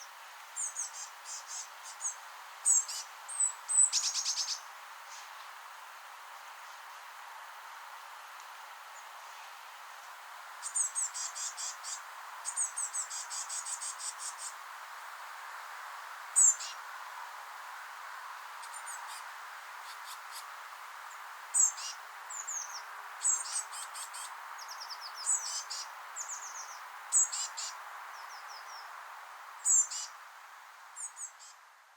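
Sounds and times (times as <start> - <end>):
steady background hiss: 0.0 - 31.9.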